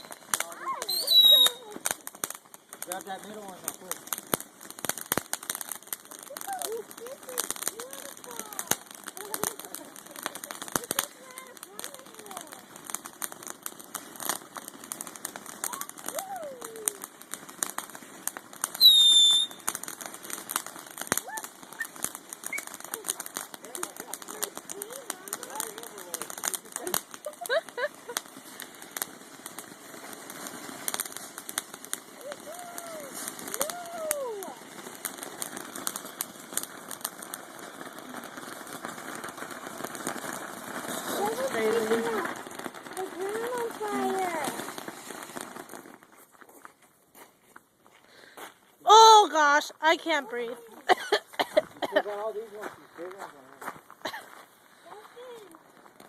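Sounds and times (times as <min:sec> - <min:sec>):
high firework whistle: 0:00.0 - 0:01.7, 0:18.7 - 0:19.8, 0:21.2 - 0:22.8
fireworks crackling and popping: 0:00.0 - 0:56.0.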